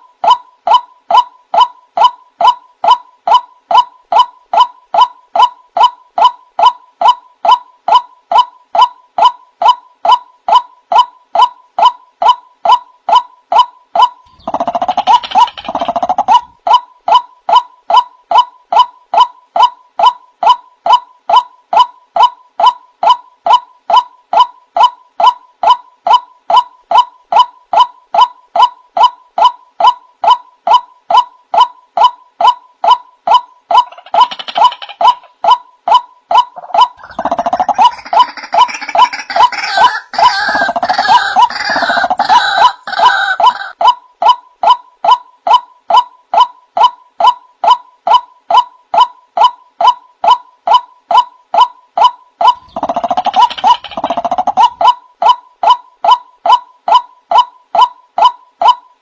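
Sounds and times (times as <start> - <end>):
waterhen calling wak: 36.4 - 43.8.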